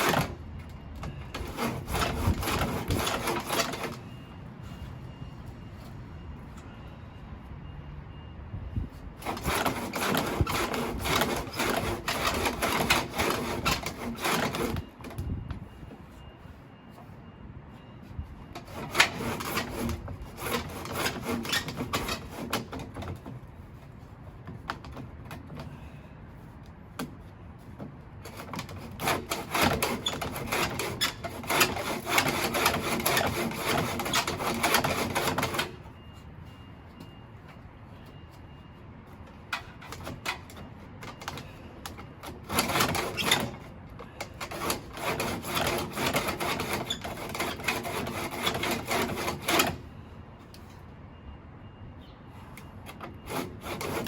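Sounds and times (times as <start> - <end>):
hand tool scraping and rasping: 0.0 - 0.4, 1.0 - 4.1, 9.2 - 15.2, 18.6 - 23.4, 28.2 - 35.9, 39.8 - 49.9, 52.9 - 54.0.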